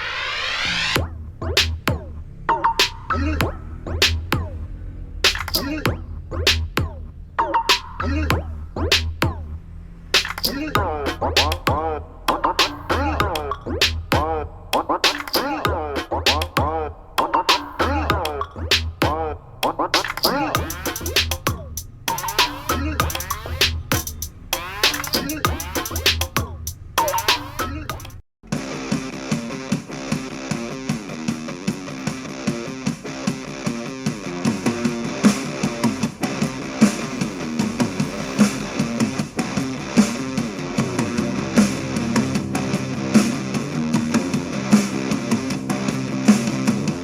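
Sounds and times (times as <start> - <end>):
rapping over heavy bass beat: 1.0 - 9.6, 10.2 - 47.0
rock music with electric guitar: 28.5 - 47.0.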